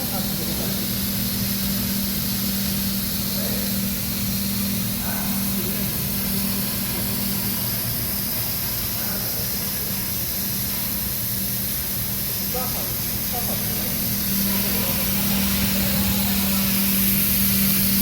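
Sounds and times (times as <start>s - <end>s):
machine humming and hissing: 0.0s - 18.0s.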